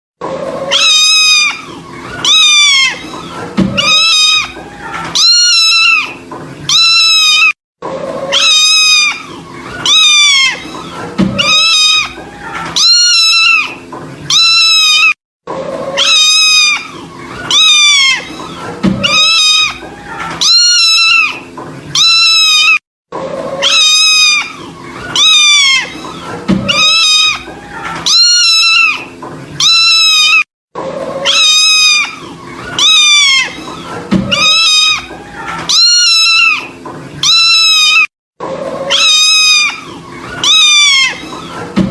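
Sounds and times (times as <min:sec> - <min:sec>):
kitten mewing: 0:00.7 - 0:04.6, 0:05.2 - 0:07.6, 0:08.3 - 0:10.8, 0:11.4 - 0:12.2, 0:12.8 - 0:15.2, 0:16.0 - 0:18.4, 0:19.0 - 0:19.8, 0:20.4 - 0:21.4, 0:22.0 - 0:22.8, 0:23.6 - 0:24.6, 0:26.6 - 0:27.5, 0:28.1 - 0:30.5, 0:31.2 - 0:33.7, 0:34.3 - 0:35.1, 0:35.7 - 0:38.1, 0:38.8 - 0:41.3.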